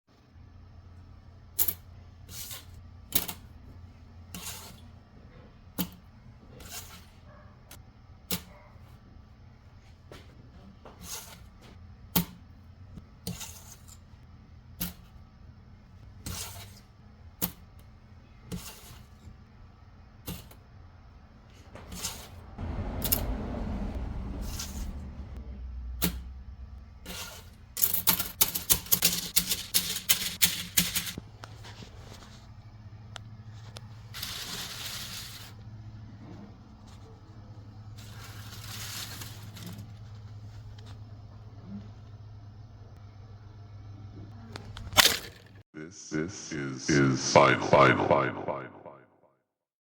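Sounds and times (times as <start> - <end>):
loud rustling noise: 34.1 - 35.6, 37.9 - 40.6.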